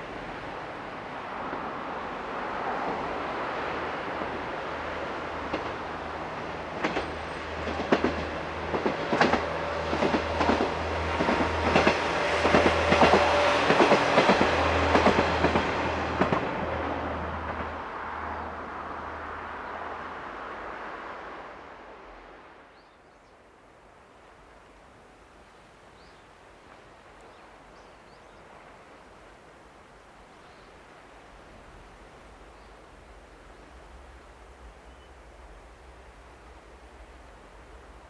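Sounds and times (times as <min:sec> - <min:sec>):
train wheels clacking over rail joints: 0:05.1 - 0:17.8.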